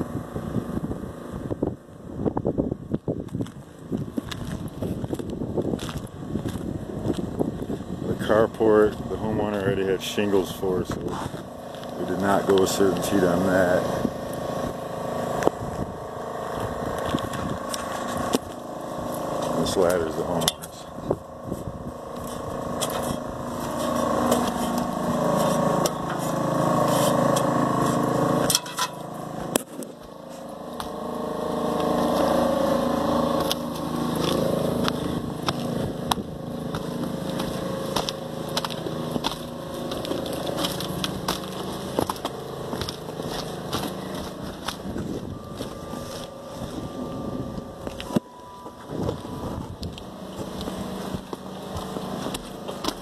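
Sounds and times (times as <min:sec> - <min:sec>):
motor running steadily: 0:00.0 - 0:53.0
clicks and crunching: 0:31.7 - 0:46.4.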